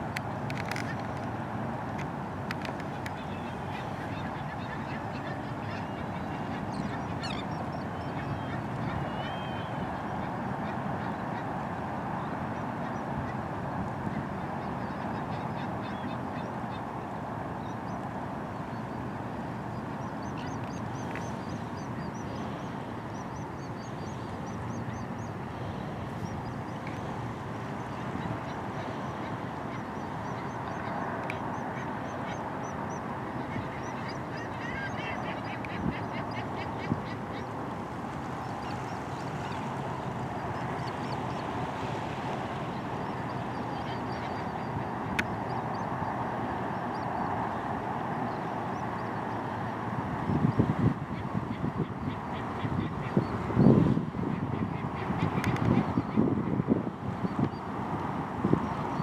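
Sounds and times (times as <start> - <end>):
wind: 0.0 - 59.0
flock of birds calling: 2.5 - 11.5, 19.7 - 47.5.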